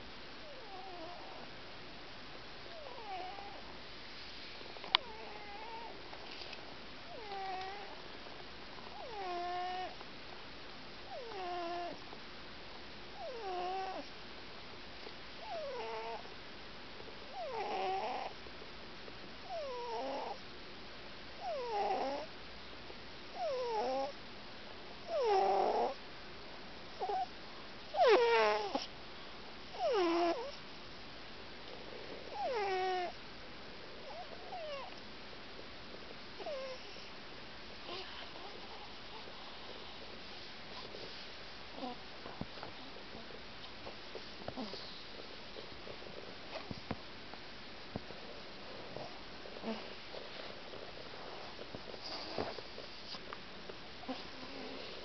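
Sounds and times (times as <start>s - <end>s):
cat snoring with whistling snore: 0.4s - 1.4s, 2.7s - 3.6s, 5.0s - 5.9s, 8.9s - 10.0s, 11.1s - 12.0s, 13.2s - 14.1s, 15.4s - 16.3s, 17.3s - 18.4s, 19.5s - 20.4s, 21.4s - 22.3s, 23.4s - 24.2s, 25.1s - 26.0s, 27.0s - 27.3s, 27.9s - 28.9s, 29.7s - 30.6s, 31.7s - 33.2s, 33.9s - 34.9s, 36.4s - 37.1s.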